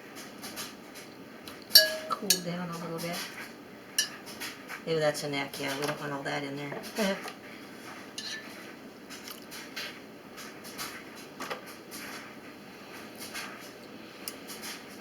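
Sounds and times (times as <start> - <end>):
utensil clinking against cooking pot: 1.7 - 2.6, 4.0 - 4.4, 8.2 - 8.6.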